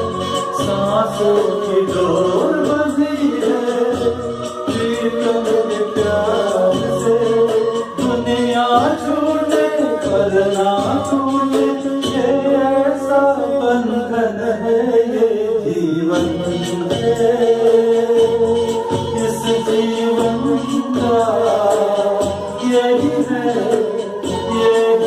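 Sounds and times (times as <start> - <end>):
karaoke backing track: 0.0 - 25.0
person singing: 0.0 - 25.0.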